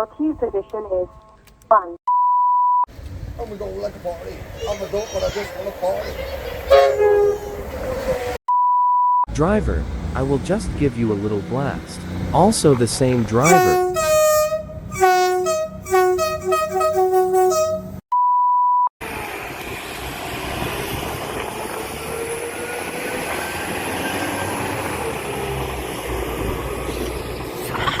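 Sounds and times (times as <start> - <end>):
moving train rumble: 2.9 - 8.4, 9.3 - 18.0, 19.0 - 28.0
train horn short blasts: 6.7 - 7.6, 13.4 - 18.0.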